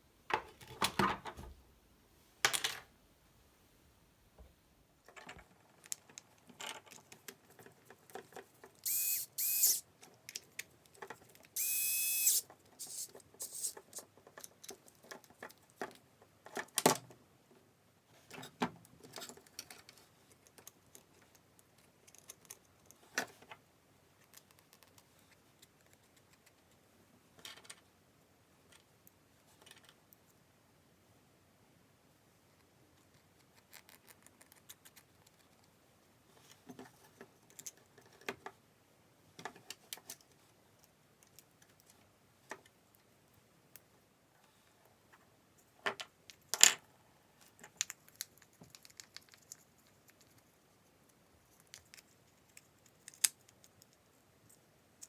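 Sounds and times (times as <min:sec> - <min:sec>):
small power tool whirring: 0:08.8 - 0:09.8, 0:11.6 - 0:13.8.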